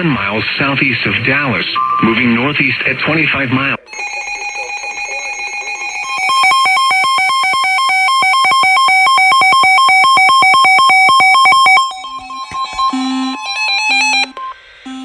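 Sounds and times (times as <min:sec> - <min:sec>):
warbling electronic alert tone: 0:03.9 - 0:14.3.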